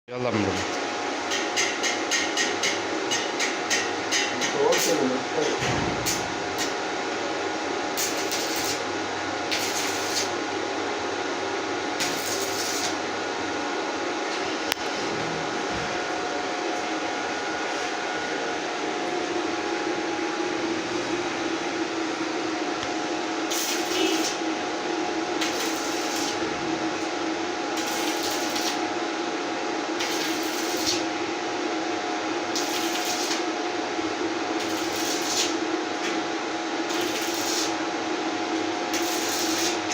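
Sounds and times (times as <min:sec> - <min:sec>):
can-sealing machine humming: 0:22.4 - 0:29.1, 0:29.9 - 0:39.9.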